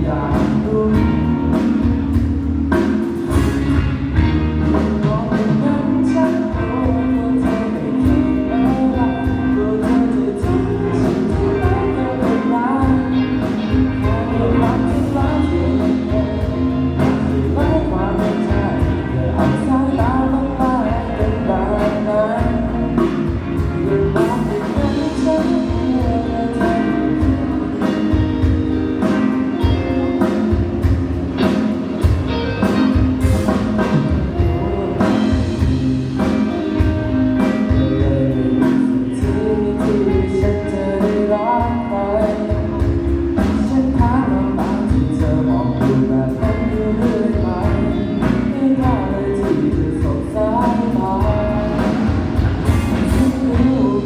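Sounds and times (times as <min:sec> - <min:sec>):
pop music with singing: 0:00.0 - 0:54.0.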